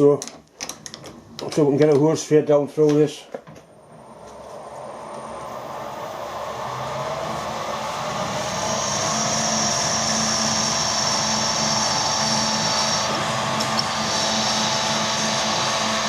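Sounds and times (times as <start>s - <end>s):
power drill whining: 3.7s - 16.0s.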